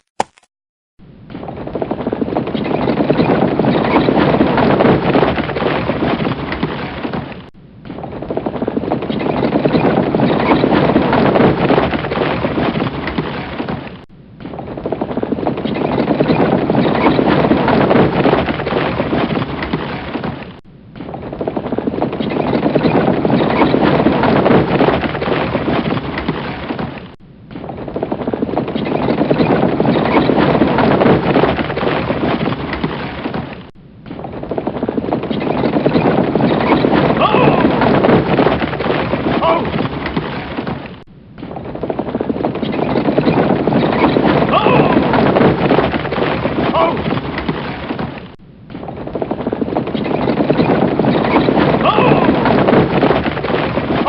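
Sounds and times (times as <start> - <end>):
horses' hooves galloping: 1.2 - 54.0.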